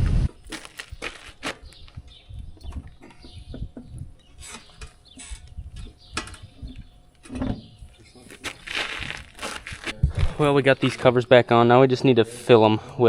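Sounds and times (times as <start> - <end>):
dull low thumps: 0.0 - 4.2, 5.4 - 11.0.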